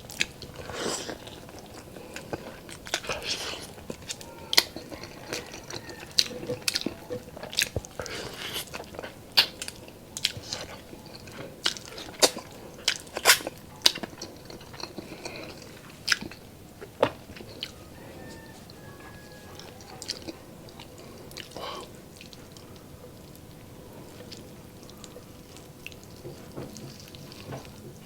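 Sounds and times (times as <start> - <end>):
person chewing food: 0.0 - 28.0
mouth clicks and smacks: 7.6 - 10.5.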